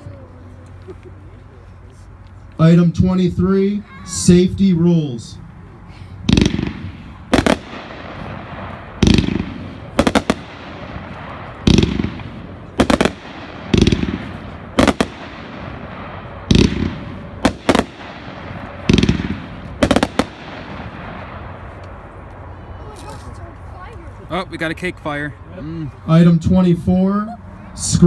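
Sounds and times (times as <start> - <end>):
firework bangs overhead: 6.2 - 22.2.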